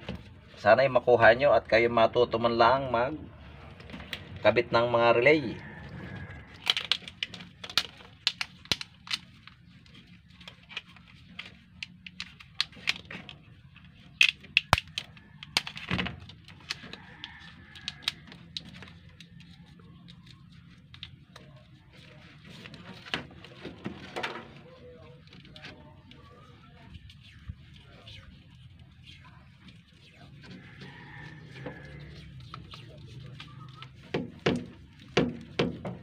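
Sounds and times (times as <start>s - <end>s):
small plastic parts clicking: 6.6s - 9.6s.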